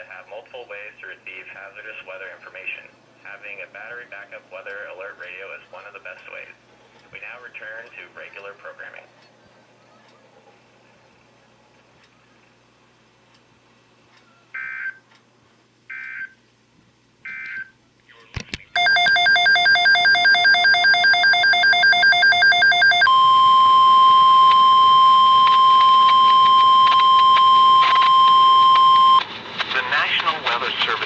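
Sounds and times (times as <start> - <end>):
screechy digital data bursts: 18.8 - 23.1
pulsing electronic alarm beep: 18.8 - 29.2
steady warning alarm tone: 18.8 - 29.2.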